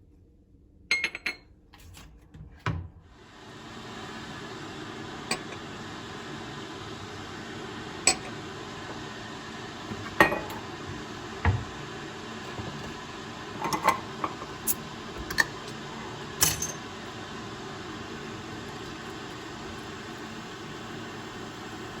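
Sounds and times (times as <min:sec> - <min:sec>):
dishes and utensils clinking: 0:10.1 - 0:10.6, 0:13.6 - 0:15.6, 0:16.4 - 0:16.8.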